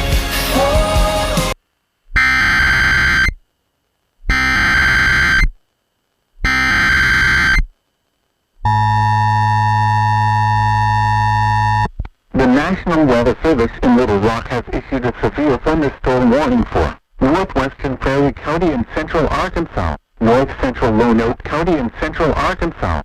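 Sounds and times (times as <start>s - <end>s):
steady attention tone: 2.1s - 3.4s, 4.3s - 5.6s, 6.4s - 7.7s, 8.6s - 21.9s
digital data tone bursts: 2.2s - 3.4s, 4.3s - 5.5s, 6.4s - 7.7s.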